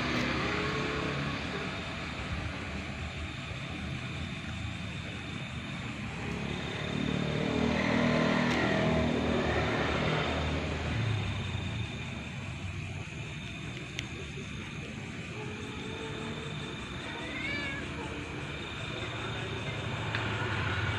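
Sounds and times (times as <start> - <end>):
steady traffic noise: 0.0 - 20.9
vehicle engine passing: 5.9 - 13.6, 18.4 - 20.9.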